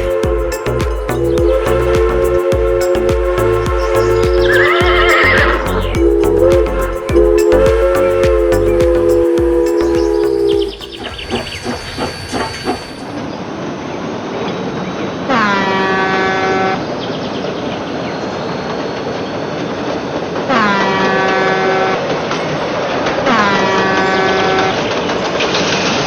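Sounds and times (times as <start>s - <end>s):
train horn blasts: 0.0s - 10.7s, 15.3s - 16.8s, 20.5s - 22.1s, 23.2s - 24.9s
train rumbling and clattering: 0.0s - 15.3s, 16.8s - 26.0s.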